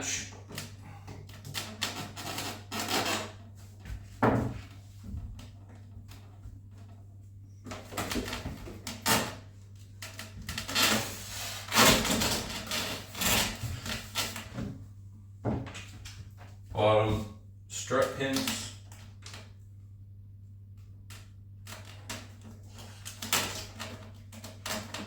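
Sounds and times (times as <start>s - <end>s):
rubs scrapes and light knocks: 0.0s - 14.9s
steady low hum: 0.0s - 25.0s.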